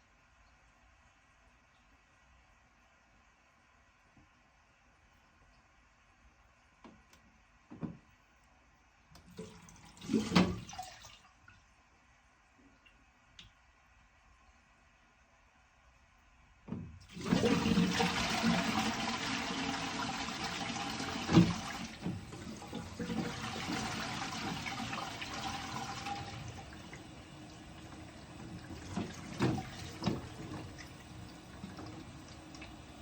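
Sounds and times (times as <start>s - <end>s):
toilet flushing: 9.2s - 11.2s, 17.0s - 33.0s.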